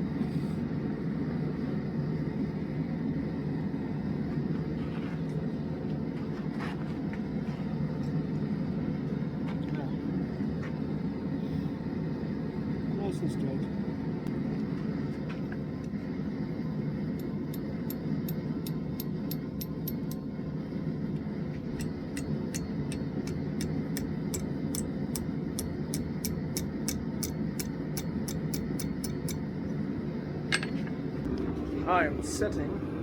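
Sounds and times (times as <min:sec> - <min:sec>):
forge roaring: 0:31.3 - 0:33.0.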